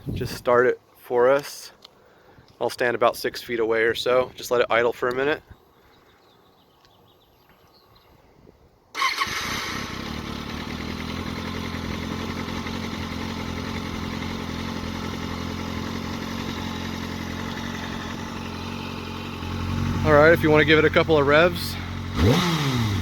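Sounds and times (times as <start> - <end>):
motorcycle engine idling: 9.4 - 23.0.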